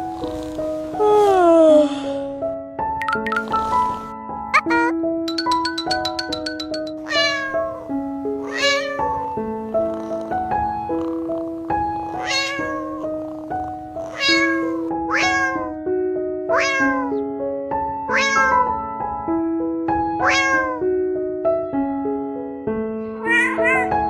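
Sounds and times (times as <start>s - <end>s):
keyboard background music: 0.0s - 24.0s
cat meowing: 3.6s - 5.0s, 7.0s - 15.8s, 16.5s - 17.2s, 18.1s - 18.8s, 20.2s - 20.8s, 23.2s - 24.0s.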